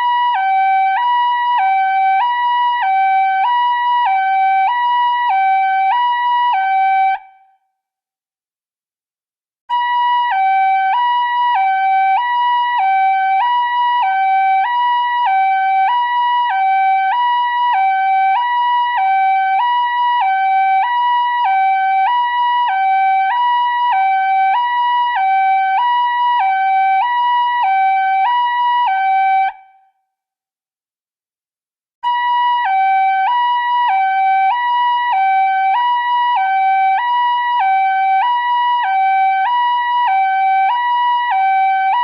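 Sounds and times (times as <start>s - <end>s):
two-tone electronic alarm: 9.7s - 29.9s, 32.0s - 42.0s.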